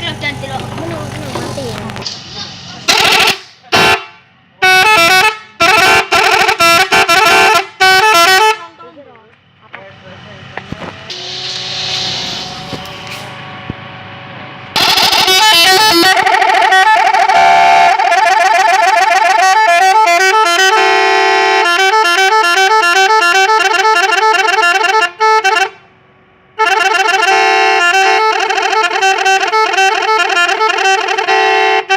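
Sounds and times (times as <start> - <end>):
multi-tone horn playing melody: 2.9 - 8.8, 14.7 - 25.8, 26.6 - 31.9.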